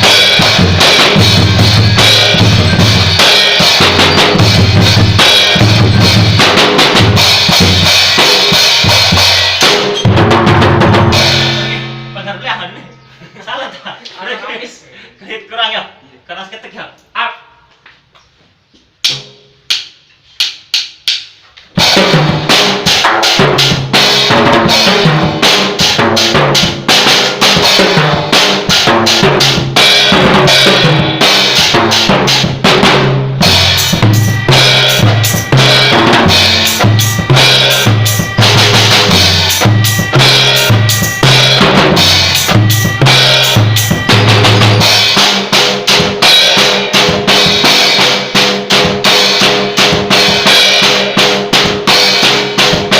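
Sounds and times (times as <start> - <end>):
drum kit playing a beat: 0.0 - 13.8, 18.8 - 52.9.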